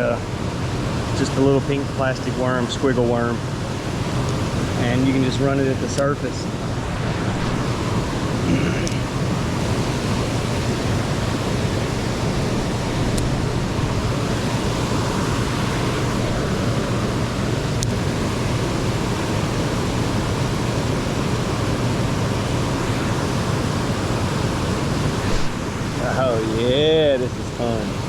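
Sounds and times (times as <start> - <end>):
river water rushing: 3.4 - 28.0.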